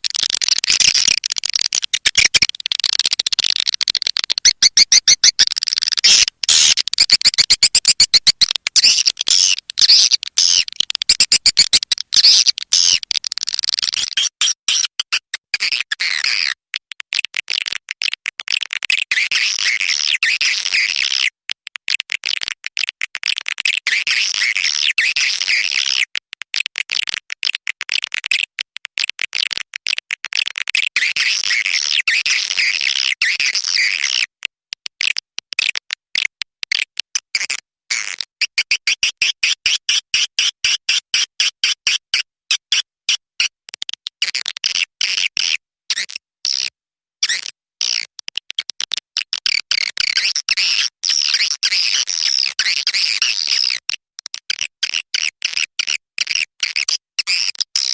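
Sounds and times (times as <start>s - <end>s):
swiftlet calls twittering: 0.0s - 14.3s.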